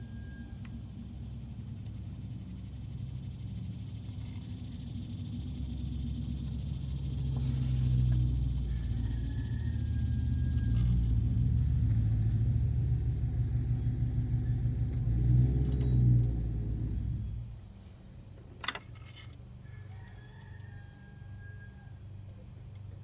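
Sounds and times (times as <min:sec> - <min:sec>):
vehicle engine running: 0:00.0 - 0:18.1.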